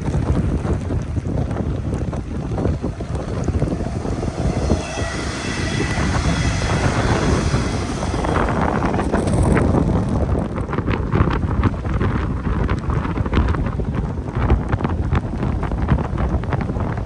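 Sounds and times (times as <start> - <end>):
rushing clatter: 0.0 - 12.1
strong wind buffeting microphone: 0.0 - 17.0
electric train passing: 1.0 - 10.7
steady high whine: 1.3 - 10.8.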